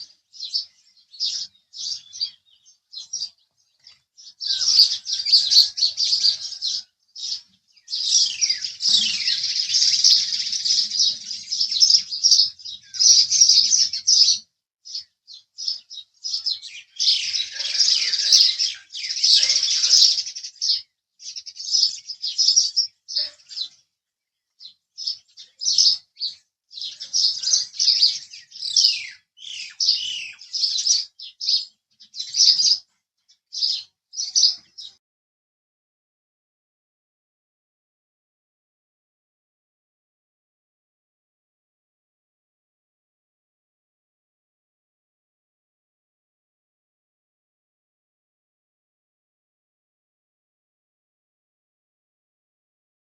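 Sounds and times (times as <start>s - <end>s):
sparrows chirping: 0.0s - 35.0s.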